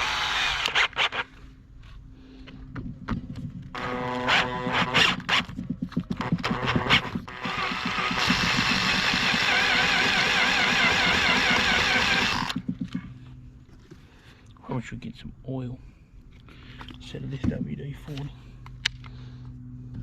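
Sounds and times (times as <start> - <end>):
electric drill whining: 0.0 - 1.5, 3.7 - 12.7
drill bit squealing: 6.2 - 12.6.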